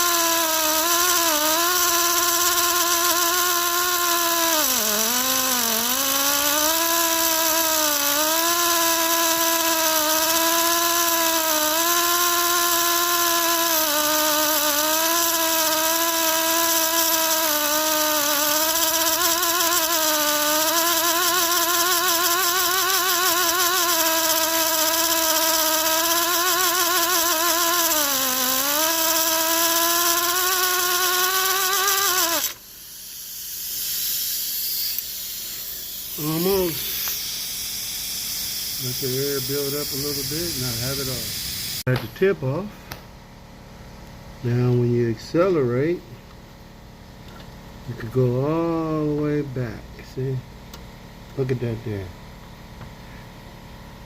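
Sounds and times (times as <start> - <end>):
steady air hiss: 0.0 - 43.1
air cut-off tool whining: 0.0 - 54.0.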